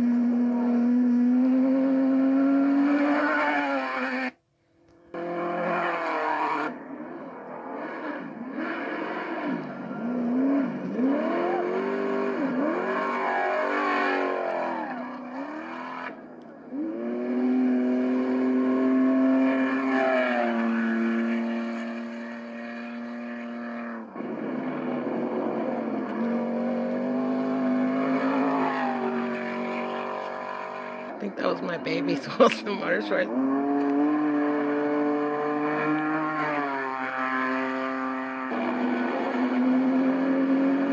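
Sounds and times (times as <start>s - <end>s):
race truck engines revving: 0.0s - 40.9s.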